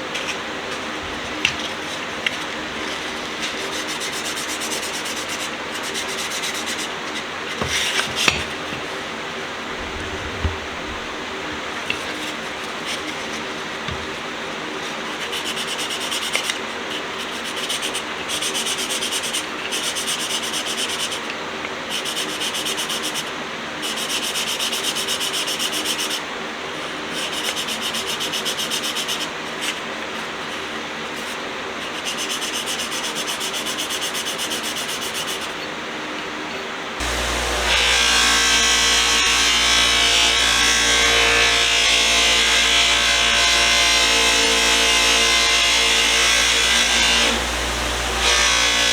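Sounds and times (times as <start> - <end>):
deeper-running power tool: 8.0 - 13.2, 37.0 - 48.9
motor-driven wheel running: 37.0 - 38.4, 47.3 - 48.9.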